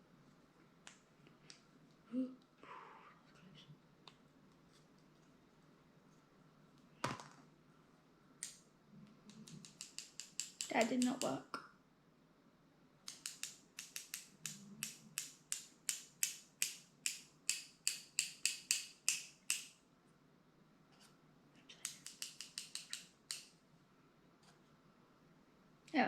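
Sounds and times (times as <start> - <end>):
scissors snipping: 9.3 - 11.4.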